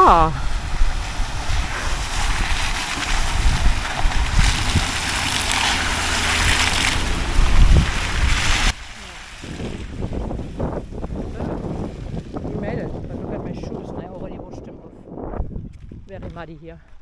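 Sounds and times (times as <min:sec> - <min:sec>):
water splashing and hissing: 0:00.0 - 0:12.2
vehicle driving through water: 0:00.0 - 0:12.8
wind buffeting microphone: 0:00.0 - 0:17.0.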